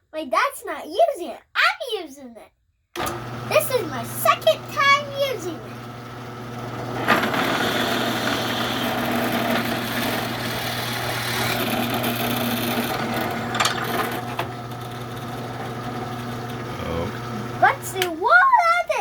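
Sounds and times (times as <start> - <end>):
drill press motor humming: 3.0 - 18.2
drill bit rasping into workpiece: 6.6 - 17.6.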